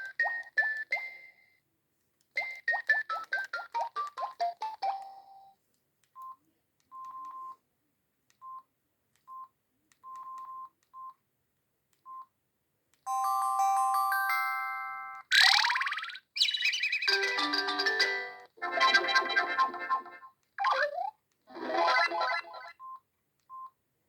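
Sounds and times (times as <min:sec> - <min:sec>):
mobile phone ringtones: 0:13.1 - 0:15.9.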